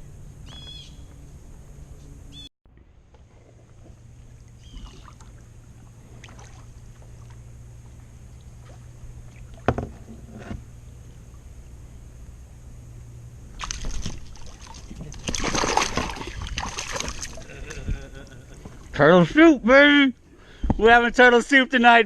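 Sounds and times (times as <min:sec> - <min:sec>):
steady low rumble: 0:00.0 - 0:22.0
paddle splashes: 0:02.8 - 0:10.7, 0:13.5 - 0:19.0
paddle knocking on kayak hull: 0:09.7 - 0:10.6.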